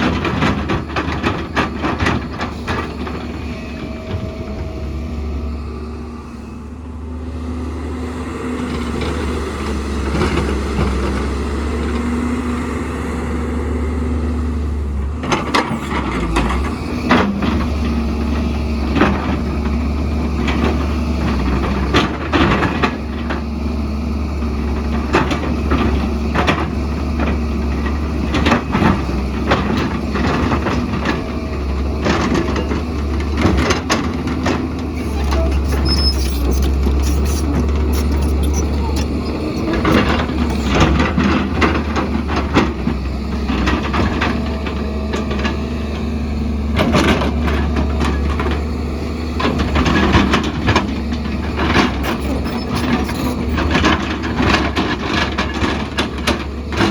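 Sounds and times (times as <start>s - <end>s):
excavator engine running: 0.0s - 56.9s
bucket clanking and scraping rock: 32.1s - 42.8s, 51.4s - 56.0s.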